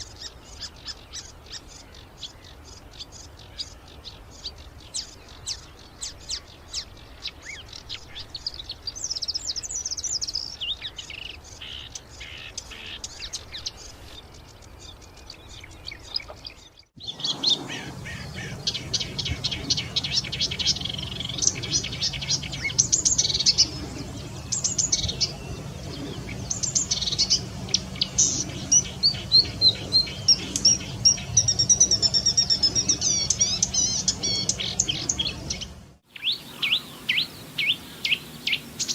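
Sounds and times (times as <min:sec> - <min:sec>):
warbler singing: 0:00.0 - 0:38.9
steady low hum: 0:17.0 - 0:38.9.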